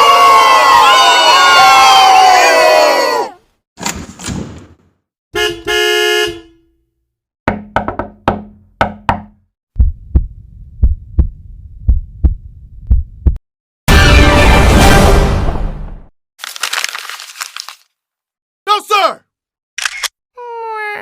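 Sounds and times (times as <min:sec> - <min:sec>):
car horn honking: 0:05.4 - 0:06.8
sharp knocks: 0:07.5 - 0:09.4
heartbeat thudding: 0:08.3 - 0:13.4.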